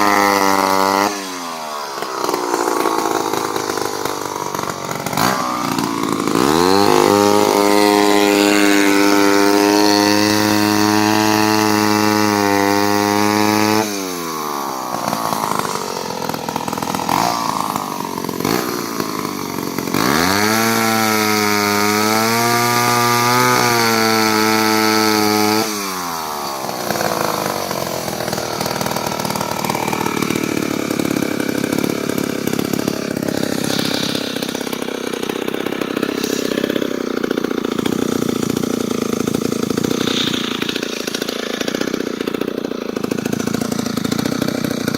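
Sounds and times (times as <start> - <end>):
two-stroke chainsaw engine revving: 0.0 - 44.9.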